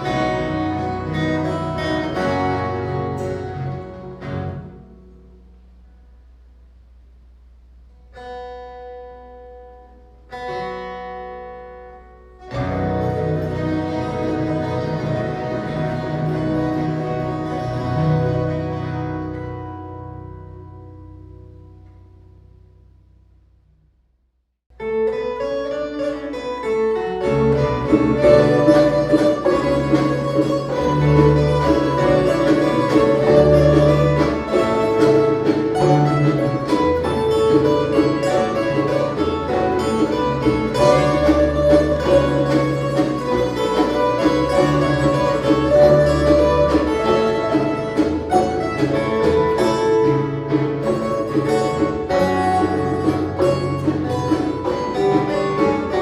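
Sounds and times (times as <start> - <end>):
folk guitars ensemble playing: 0.0 - 5.8, 8.0 - 22.7, 24.8 - 56.0
bass line: 27.4 - 56.0.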